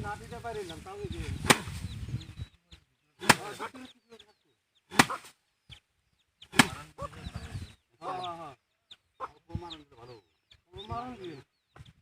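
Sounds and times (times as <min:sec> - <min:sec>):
rustle of straw and grain: 0:00.0 - 0:02.1
rice sheaves struck hard: 0:01.4 - 0:01.8, 0:03.2 - 0:03.6, 0:04.9 - 0:05.3, 0:06.5 - 0:06.8.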